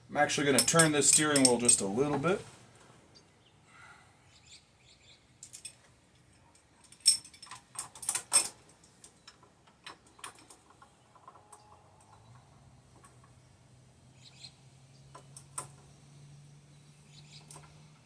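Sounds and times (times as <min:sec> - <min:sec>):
metal tool clicking and clinking: 0:00.5 - 0:01.9, 0:05.4 - 0:12.4.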